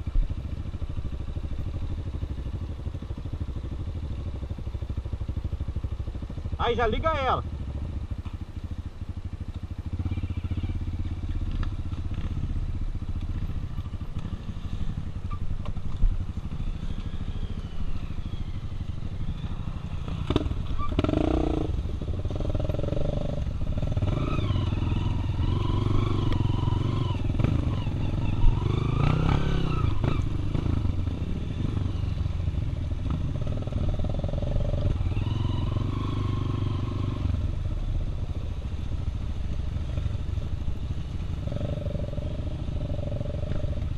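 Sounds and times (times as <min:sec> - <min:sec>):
dirt bike engine revving: 0:16.5 - 0:32.4, 0:33.0 - 0:37.6.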